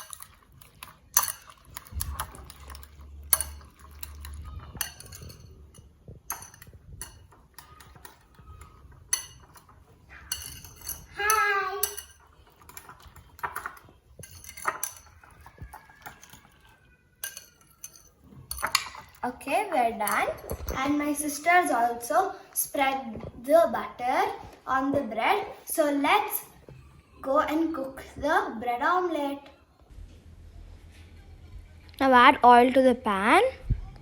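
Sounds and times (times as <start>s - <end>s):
metal utensil beating eggs in bowl: 0.0s - 22.0s.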